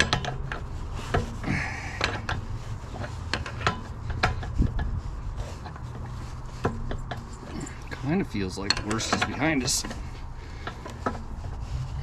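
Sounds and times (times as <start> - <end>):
metallic clicks and creaks: 0.0 - 12.0
short scraping rub: 0.0 - 12.0.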